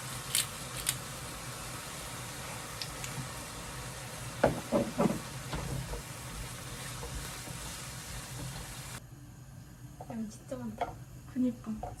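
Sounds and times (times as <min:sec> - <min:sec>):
food sizzling in a pan: 0:00.0 - 0:09.0.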